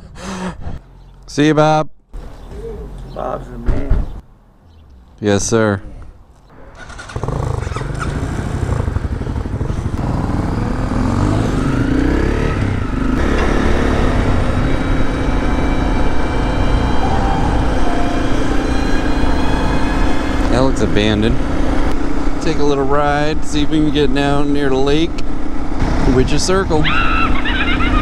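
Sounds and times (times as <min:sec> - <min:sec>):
motorcycle engine accelerating: 0:06.5 - 0:28.0.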